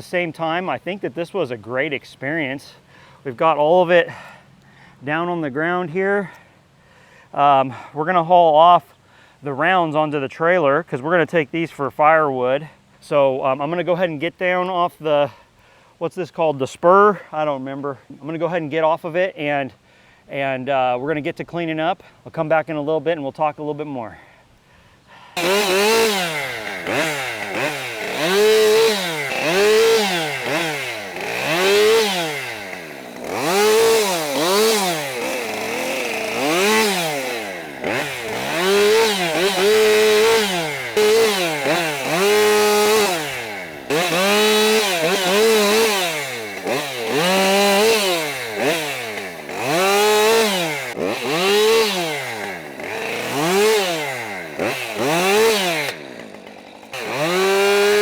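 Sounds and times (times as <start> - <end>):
chainsaw revving: 25.3 - 58.0.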